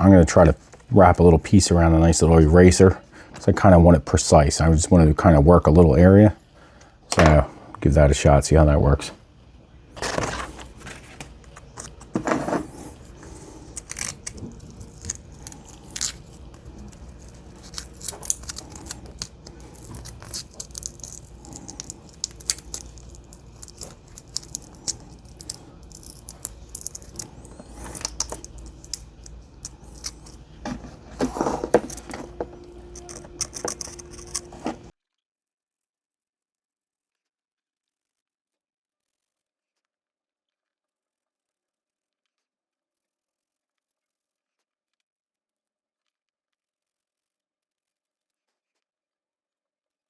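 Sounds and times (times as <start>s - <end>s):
sandpaper scratching circuit board: 11.9s - 34.9s.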